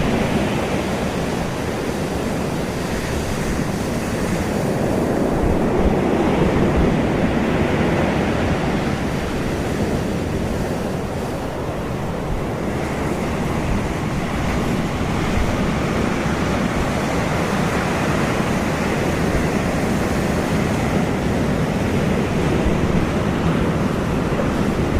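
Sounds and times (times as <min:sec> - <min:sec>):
waves breaking: 0:00.0 - 0:24.9
wind buffeting microphone: 0:00.0 - 0:24.9.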